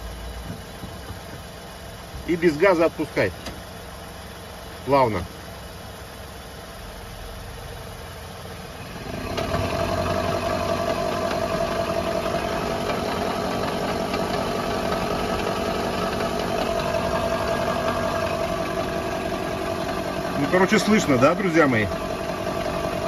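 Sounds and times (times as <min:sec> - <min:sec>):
car engine idling: 0:00.0 - 0:23.0
wheel bearing drone: 0:08.6 - 0:23.0.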